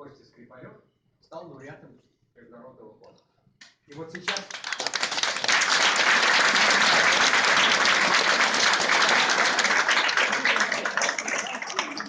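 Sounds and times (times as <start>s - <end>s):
audience applauding: 4.0s - 12.0s.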